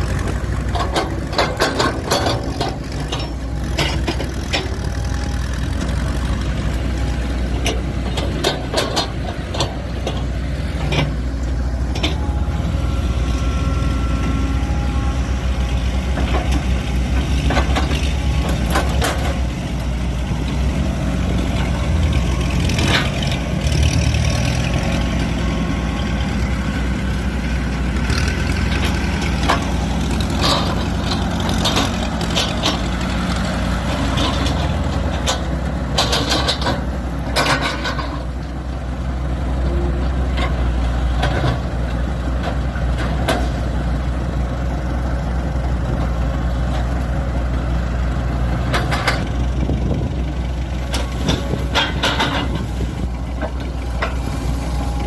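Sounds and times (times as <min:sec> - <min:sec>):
diesel machinery running: 0:00.0 - 0:55.0
metallic clanks: 0:00.6 - 0:06.0, 0:07.4 - 0:12.3, 0:33.9 - 0:38.5, 0:50.8 - 0:54.5.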